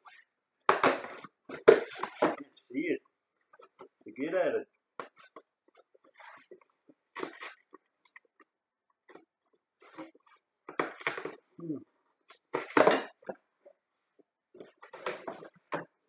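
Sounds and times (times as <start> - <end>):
cardboard tearing and crunching: 7.1 - 7.7.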